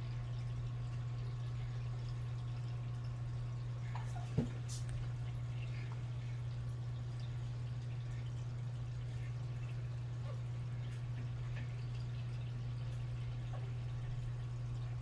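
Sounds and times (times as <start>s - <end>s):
steady low mains hum: 0.0s - 15.0s.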